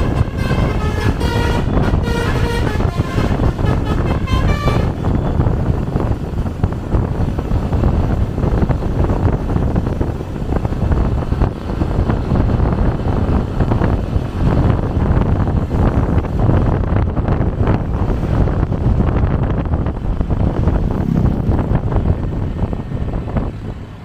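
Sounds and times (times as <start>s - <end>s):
multi-trumpet bus horn tune: 0.0s - 5.3s
traffic road and wind rumble: 0.0s - 24.0s.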